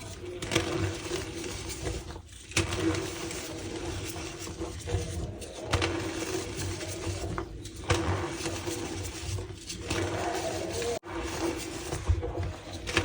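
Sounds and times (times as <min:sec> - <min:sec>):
chalk squeaking and crunching: 0:00.0 - 0:13.0.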